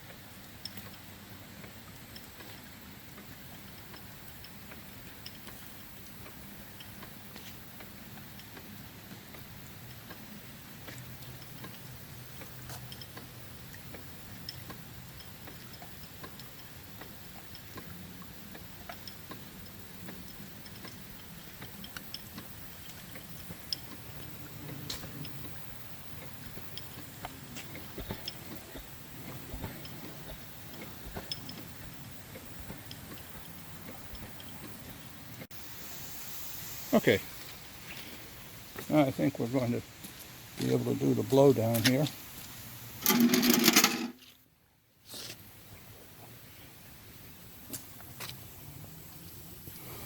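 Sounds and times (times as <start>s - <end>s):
steam engine clicking ticks: 0.0s - 35.5s.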